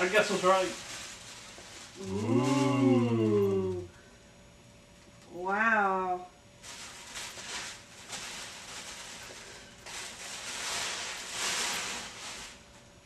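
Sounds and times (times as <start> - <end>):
packaging rustling and crinkling: 0.0 - 2.8, 6.6 - 12.8.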